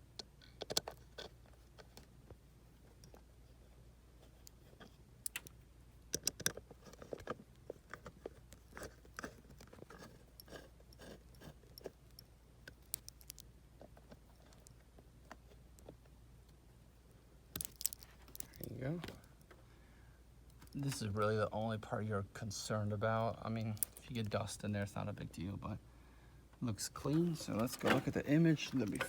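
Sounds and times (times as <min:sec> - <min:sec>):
plastic parts clicking and tapping: 0:00.2 - 0:02.1, 0:04.4 - 0:16.0, 0:17.5 - 0:19.6, 0:27.1 - 0:29.0.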